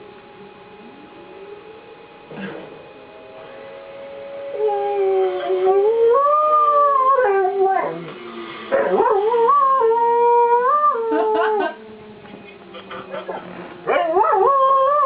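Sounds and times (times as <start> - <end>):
warning siren tone: 2.9 - 11.2
dog howling: 4.1 - 8.1, 8.7 - 12.1, 13.9 - 15.0.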